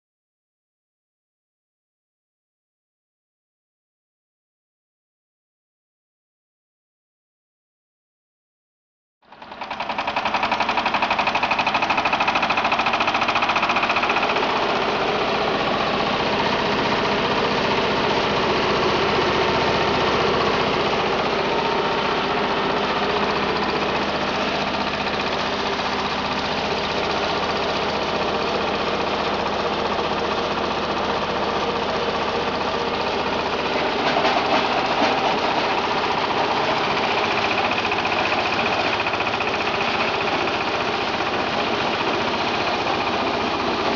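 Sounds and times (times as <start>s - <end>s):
wood shredder engine running: 9.2s - 43.9s.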